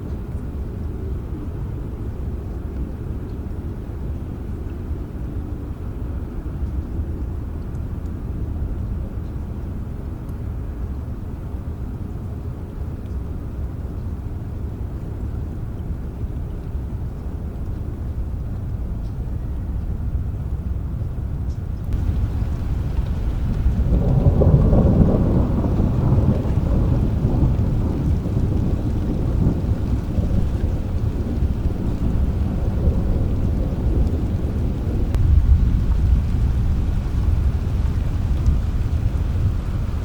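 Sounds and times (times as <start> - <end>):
steady rain: 0.0 - 40.0
low roll of thunder: 21.2 - 40.0.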